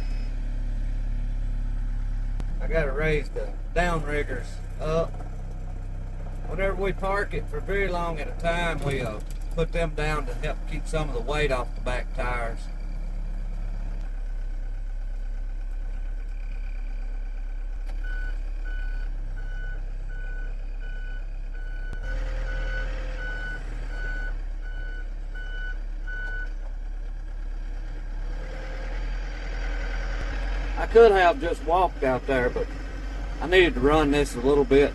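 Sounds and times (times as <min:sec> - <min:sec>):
backhoe engine running: 0:00.0 - 0:34.9
reversing alarm beeping: 0:18.0 - 0:26.5.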